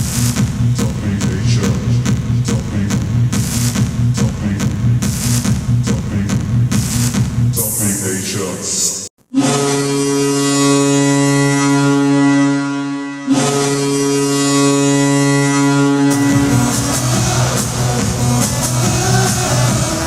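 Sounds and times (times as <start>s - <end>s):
arena music: 0.0s - 20.0s
deep air horn blasts: 9.4s - 20.0s.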